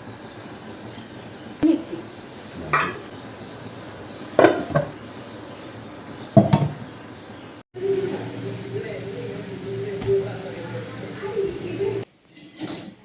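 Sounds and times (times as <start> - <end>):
dishes and utensils clattering: 0.0 - 7.2.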